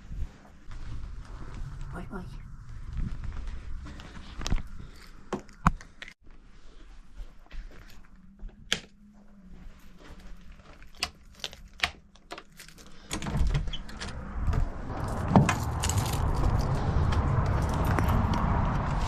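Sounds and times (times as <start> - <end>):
wind rushing over microphone: 0.0 - 4.9, 13.4 - 19.0
clicks and knocks of handling: 10.7 - 14.1.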